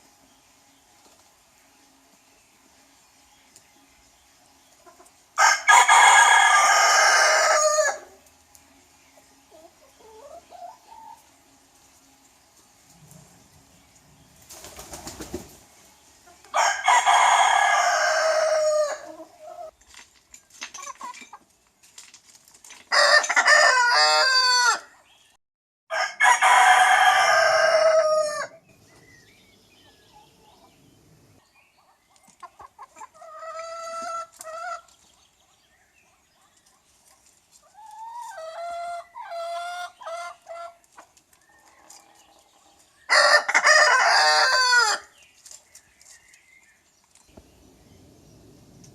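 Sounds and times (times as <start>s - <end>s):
roosters crowing: 5.4s - 8.3s, 16.4s - 19.7s, 22.9s - 25.0s, 25.9s - 28.9s, 43.0s - 45.2s.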